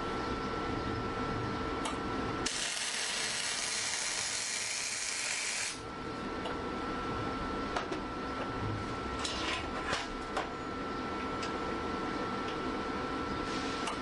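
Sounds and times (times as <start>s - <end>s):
steady electrical hum: 0.0s - 14.0s
welder arc crackling and hissing: 2.4s - 5.8s.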